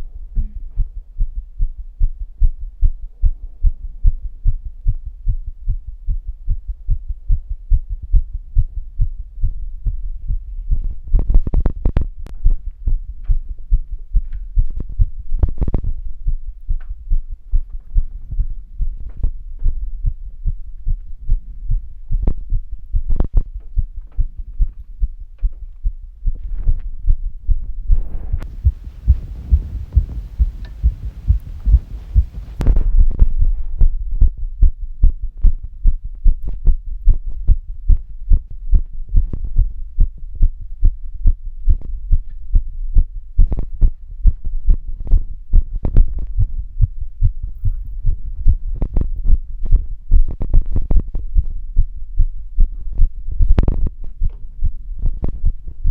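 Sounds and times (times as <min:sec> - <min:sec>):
heartbeat thuds: 0:00.0 - 0:55.9
rustling hiss: 0:28.4 - 0:32.6.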